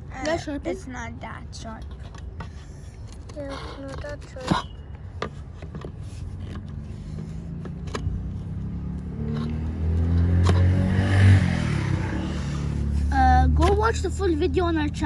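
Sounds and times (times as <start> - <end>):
vehicle engine running: 6.6 - 15.0.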